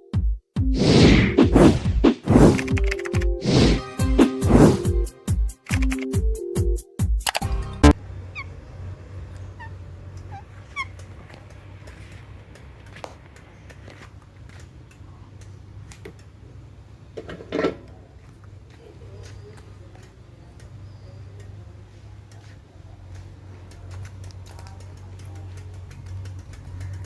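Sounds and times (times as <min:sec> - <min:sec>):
low steady hum: 0:07.8 - 0:26.8
parrot squawk: 0:08.0 - 0:11.3
toy bicycle clicking: 0:08.1 - 0:16.5, 0:19.1 - 0:27.0.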